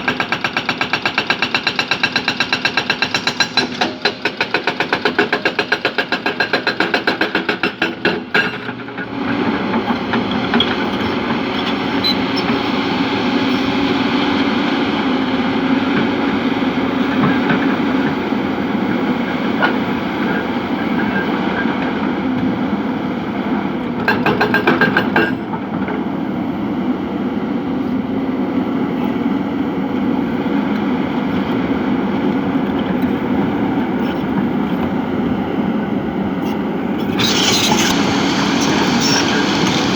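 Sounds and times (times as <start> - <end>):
diesel machine engine under load: 25.4 - 39.9.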